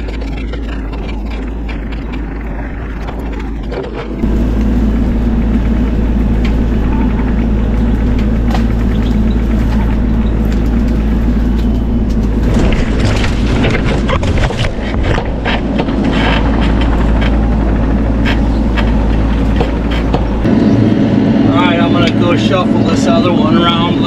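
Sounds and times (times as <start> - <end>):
wood and branches breaking: 0.0 - 20.5
excavator diesel engine running: 0.0 - 24.0.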